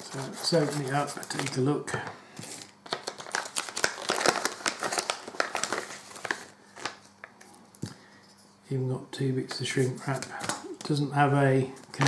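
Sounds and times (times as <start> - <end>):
packaging crinkling and rustling: 0.0 - 1.7, 2.4 - 7.5.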